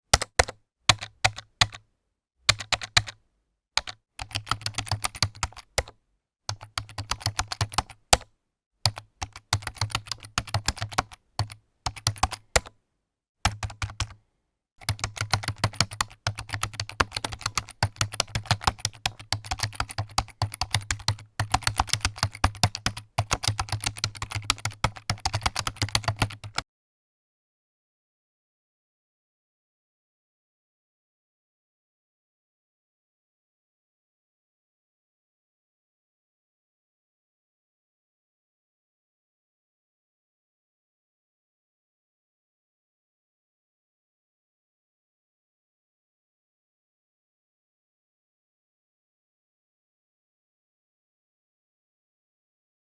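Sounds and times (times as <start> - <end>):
typing on computer keyboard: 0.2 - 1.8, 2.5 - 3.2, 3.8 - 8.3, 8.9 - 12.8, 13.5 - 14.2, 14.8 - 26.6.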